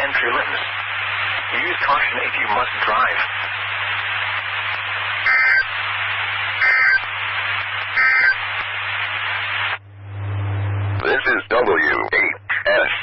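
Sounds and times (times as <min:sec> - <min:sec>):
radio static hiss: 0:00.0 - 0:13.0
low hum: 0:03.2 - 0:11.4
warbling two-tone data bursts: 0:05.2 - 0:05.8, 0:06.6 - 0:07.1, 0:07.8 - 0:08.4.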